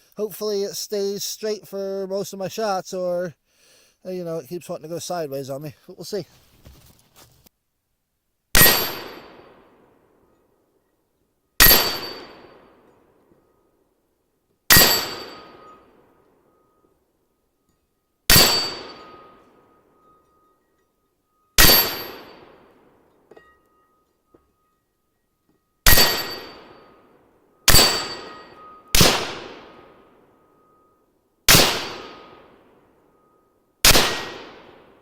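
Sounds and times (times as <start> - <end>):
rifle shots: 8.6 - 9.7, 11.6 - 12.6, 14.7 - 15.6, 18.3 - 19.3, 25.9 - 26.8, 27.7 - 29.9, 31.5 - 32.4, 33.8 - 34.9.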